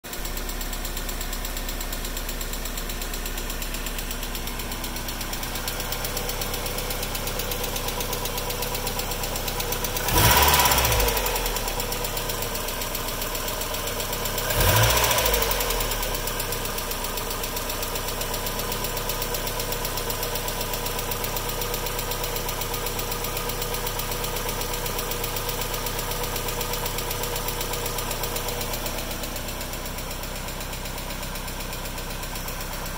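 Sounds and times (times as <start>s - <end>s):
car engine idling and revving: 0.0s - 32.9s
engine lifter ticking: 0.0s - 32.9s.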